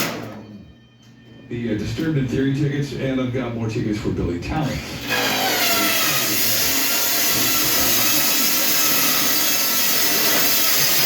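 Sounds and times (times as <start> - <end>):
power tool on sheet metal: 4.8 - 11.0.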